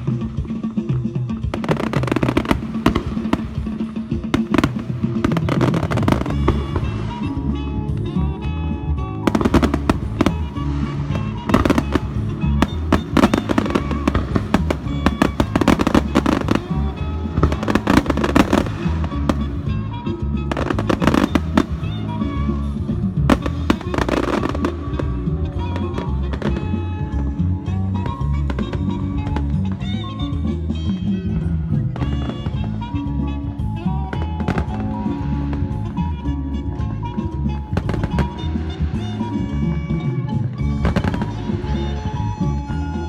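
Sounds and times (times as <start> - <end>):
fireworks bangs and crackles: 0.0 - 43.0
loud music with bass beat: 1.4 - 8.4, 9.0 - 27.4.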